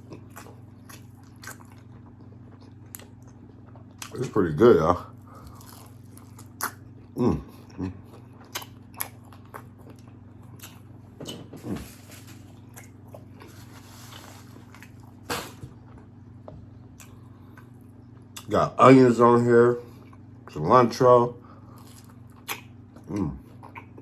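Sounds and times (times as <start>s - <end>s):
chewing and biting food: 0.0s - 4.4s, 5.0s - 11.4s, 12.2s - 16.2s, 21.6s - 24.0s.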